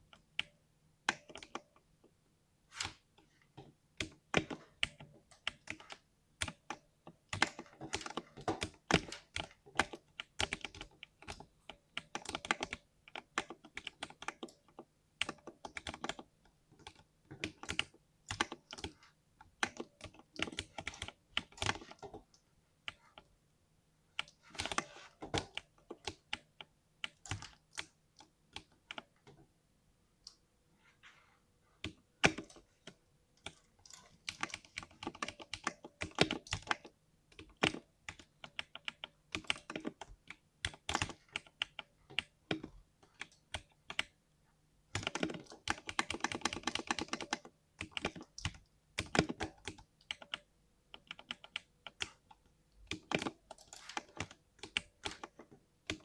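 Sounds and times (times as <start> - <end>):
mechanical keyboard typing: 4.0 - 19.0, 19.6 - 22.3, 24.2 - 29.1, 31.8 - 32.6, 33.4 - 44.2, 44.9 - 52.3, 52.9 - 56.0.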